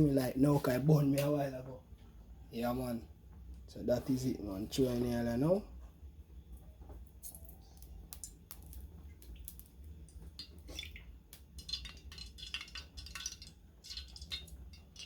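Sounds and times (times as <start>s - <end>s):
pot clinking: 10.4s - 15.0s.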